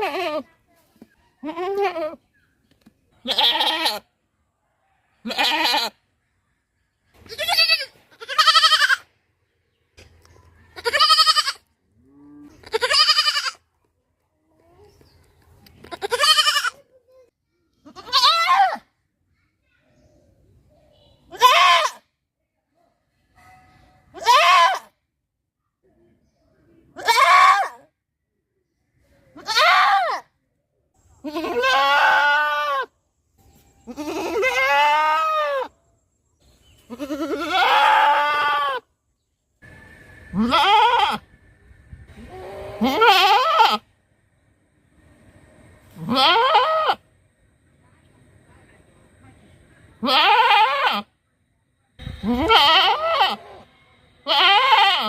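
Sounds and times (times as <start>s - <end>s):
goat bleating: 0.0s - 0.5s, 1.4s - 2.2s, 3.2s - 4.1s, 5.2s - 6.0s, 7.3s - 9.1s, 10.8s - 11.7s, 12.4s - 13.6s, 15.9s - 16.8s, 17.8s - 18.8s, 21.3s - 22.0s, 24.2s - 24.9s, 27.0s - 27.8s, 29.4s - 30.2s, 31.2s - 32.9s, 33.9s - 35.7s, 36.9s - 38.8s, 40.3s - 41.2s, 42.2s - 43.8s, 46.0s - 47.0s, 50.0s - 51.1s, 52.2s - 55.0s.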